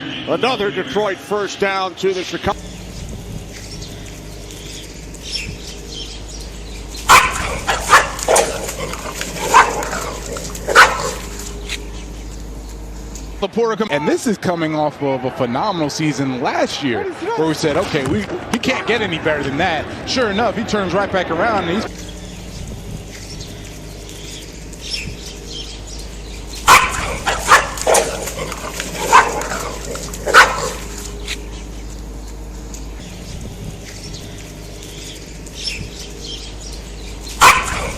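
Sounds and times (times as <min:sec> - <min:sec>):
dog barking: 0:07.1 - 0:11.5, 0:26.6 - 0:31.0, 0:37.4 - 0:37.9.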